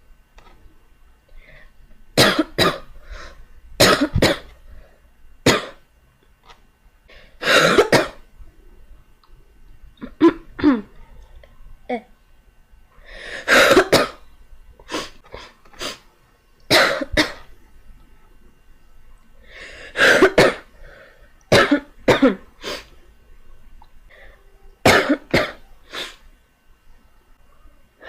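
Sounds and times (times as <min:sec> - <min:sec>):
girl coughing: 0:02.2 - 0:02.9, 0:03.8 - 0:04.5, 0:07.4 - 0:08.2, 0:10.0 - 0:10.9, 0:13.4 - 0:14.2, 0:16.7 - 0:17.5, 0:20.0 - 0:20.7, 0:21.5 - 0:22.4, 0:24.9 - 0:25.6.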